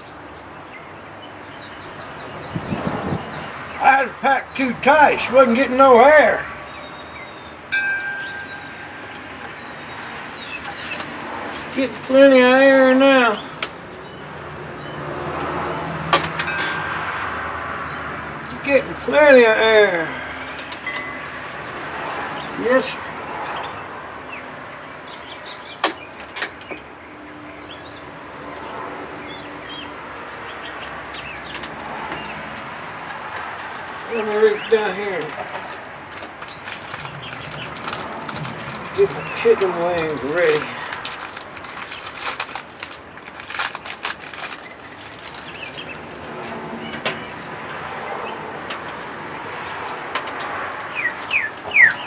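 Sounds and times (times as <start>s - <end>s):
outdoor background noise: 0.0s - 52.0s
things being handled: 7.8s - 12.2s, 16.1s - 17.0s, 20.4s - 21.2s, 31.2s - 47.9s, 48.7s - 52.0s
wood fire burning: 31.4s - 46.4s.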